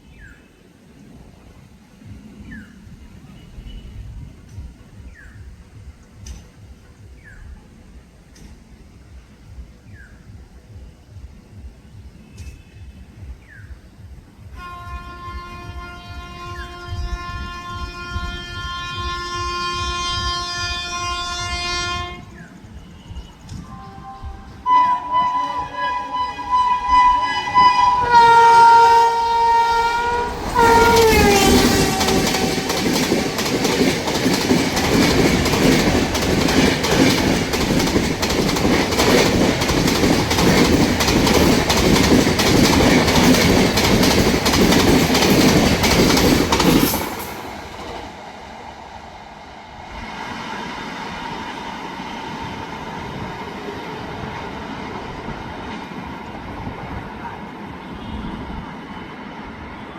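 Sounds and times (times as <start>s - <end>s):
train rumble: 0.0s - 59.9s
train wheels clattering on rails: 4.0s - 14.6s, 27.6s - 48.4s
train horn: 14.4s - 33.3s, 57.7s - 58.6s.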